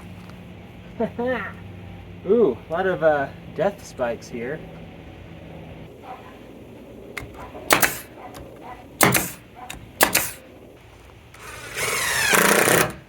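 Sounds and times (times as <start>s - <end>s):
hammer strikes on a wooden roof: 7.2s - 9.4s, 10.0s - 10.4s.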